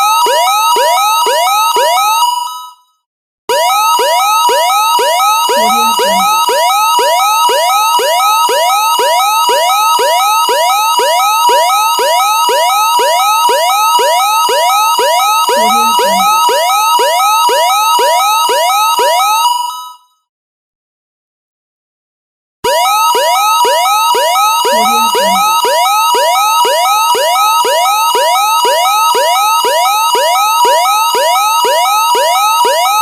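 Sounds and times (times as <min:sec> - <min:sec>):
alert signal rising tones: 0:05.5 - 0:06.5, 0:15.5 - 0:16.6, 0:24.7 - 0:25.6.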